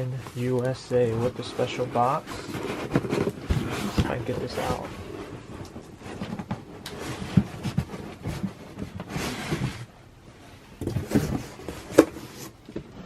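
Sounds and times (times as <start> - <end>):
cardboard and paper rustling: 0.0 - 10.0, 10.8 - 13.0.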